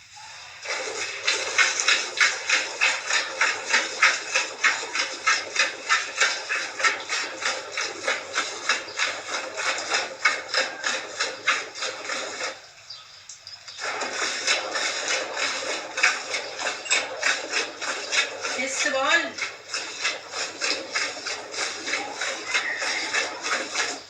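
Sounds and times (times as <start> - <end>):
milk squirting into a pail: 0.4 - 12.8, 13.7 - 24.0.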